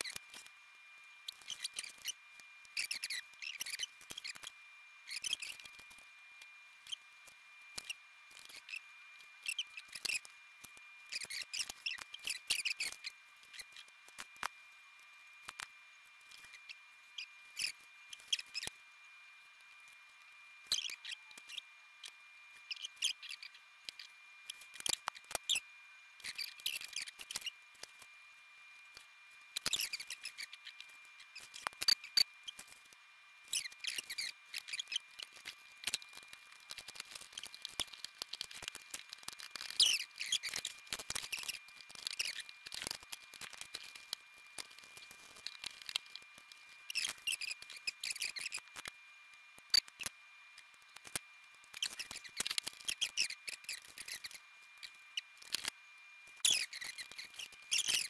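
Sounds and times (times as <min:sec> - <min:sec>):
faint high whine: 0:00.0 - 0:58.0
small tool clicks and snips: 0:29.6 - 0:48.9, 0:49.6 - 0:54.4, 0:55.4 - 0:55.7.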